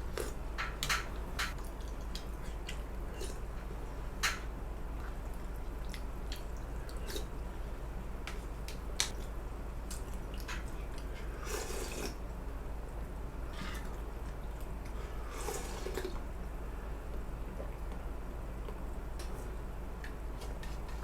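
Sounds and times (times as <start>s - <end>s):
steady low hum: 0.0s - 21.0s
slurps: 11.2s - 12.2s, 15.2s - 16.2s.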